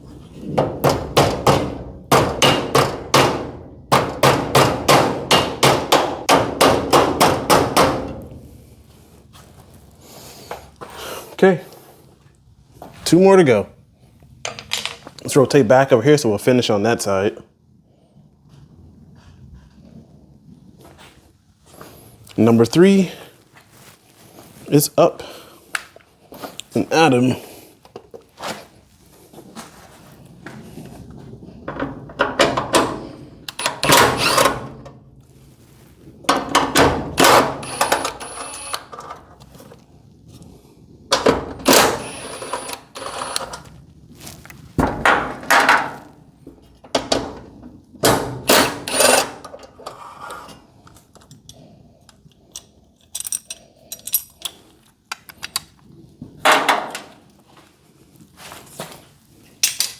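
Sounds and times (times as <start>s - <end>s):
metal hardware and tools clanking: 14.4s - 15.2s, 52.6s - 54.6s.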